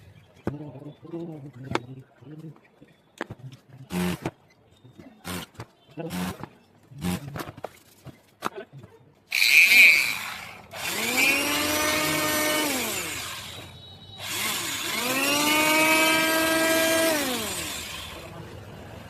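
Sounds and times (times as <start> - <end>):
electric planer motor whirring: 9.3 - 18.3.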